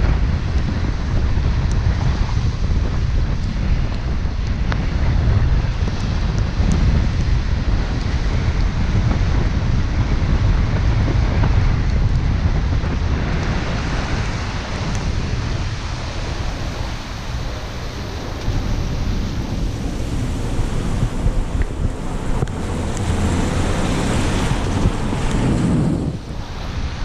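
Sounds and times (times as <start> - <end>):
car rumble: 0.0 - 27.0
wind buffeting microphone: 0.0 - 27.0
tyres hissing on wet pavement: 13.6 - 27.0.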